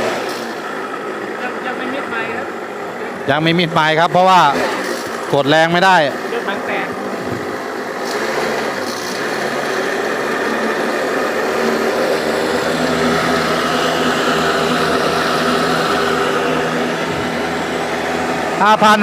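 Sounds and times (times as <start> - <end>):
boat engine running: 0.0 - 19.0.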